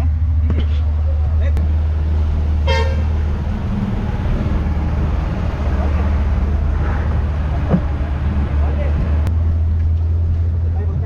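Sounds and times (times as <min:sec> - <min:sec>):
engine rumbling: 0:00.0 - 0:11.0
faint voices: 0:01.6 - 0:09.3.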